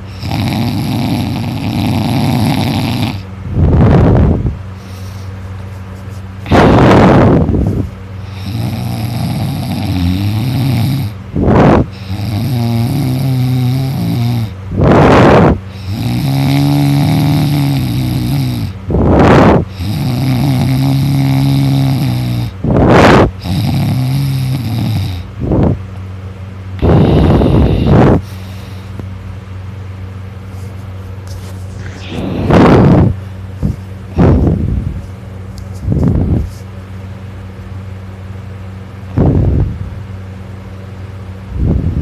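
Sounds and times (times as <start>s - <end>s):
person snoring loudly: 0.0s - 3.2s, 6.5s - 7.5s, 8.2s - 25.7s, 26.8s - 28.9s, 31.9s - 33.2s.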